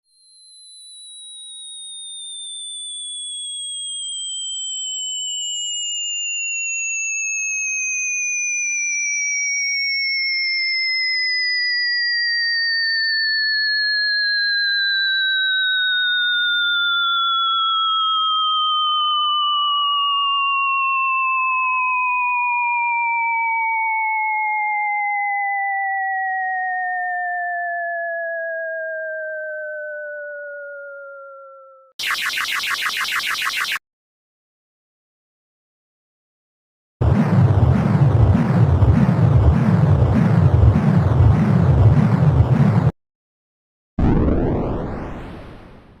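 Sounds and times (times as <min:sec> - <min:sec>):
cartoon falling whistle: 0:13.3 - 0:21.0, 0:23.0 - 0:33.8.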